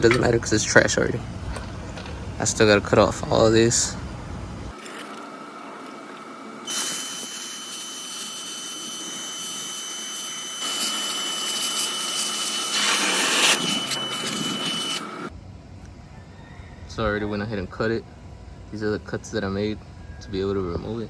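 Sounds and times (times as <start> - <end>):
power tool cutting sheet metal: 6.7 - 15.3.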